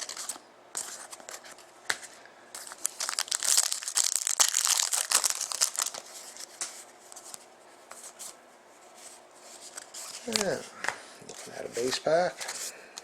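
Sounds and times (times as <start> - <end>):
wrapper tearing and crinkling: 2.7 - 6.5.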